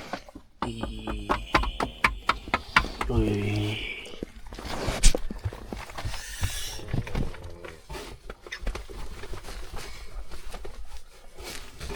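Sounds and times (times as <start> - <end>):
knocks and thumps: 0.0 - 3.9.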